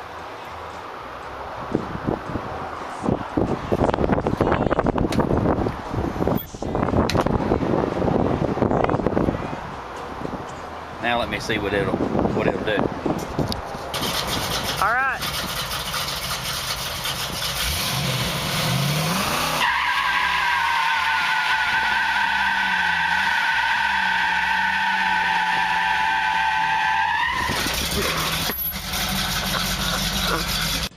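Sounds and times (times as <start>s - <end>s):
car engine revving: 13.9s - 30.9s
tires squealing: 13.9s - 30.9s.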